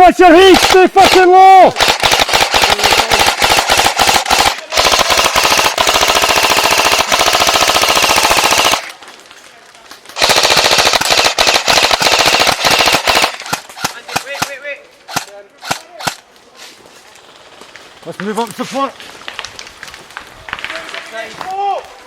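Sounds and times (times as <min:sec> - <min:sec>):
airsoft guns firing full auto: 0:00.1 - 0:09.1, 0:10.1 - 0:16.2.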